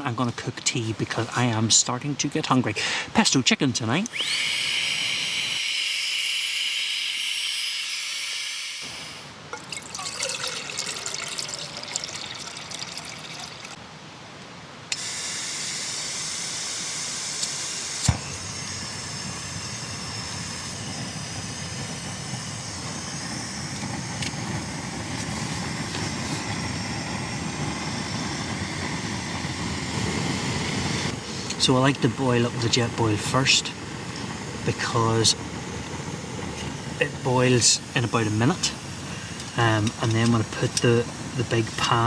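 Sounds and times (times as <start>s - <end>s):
running water rushing: 9.2s - 13.8s.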